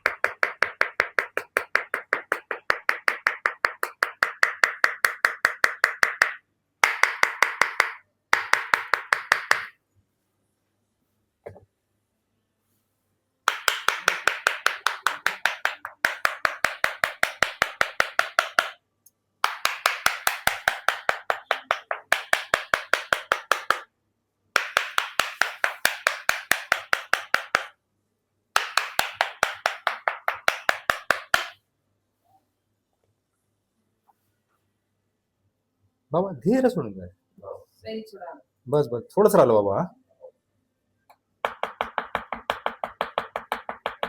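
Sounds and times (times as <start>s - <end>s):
rapid percussive tapping on body: 0.0s - 9.8s, 13.5s - 18.8s, 19.4s - 23.9s, 24.6s - 27.8s, 28.6s - 31.6s, 41.4s - 44.0s.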